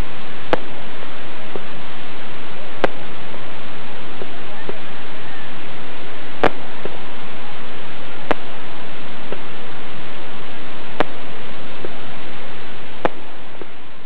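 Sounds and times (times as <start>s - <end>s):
fireworks hissing and crackling: 0.0s - 14.0s
sharp firework cracks: 0.4s - 0.9s, 2.8s - 3.3s, 6.4s - 7.1s, 8.2s - 8.7s, 10.9s - 12.3s, 12.9s - 13.8s.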